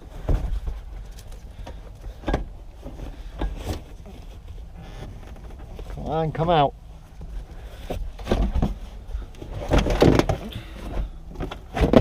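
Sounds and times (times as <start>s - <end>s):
heavy thuds: 7.1s - 12.0s
car interior trim rattling and scraping: 7.2s - 12.0s.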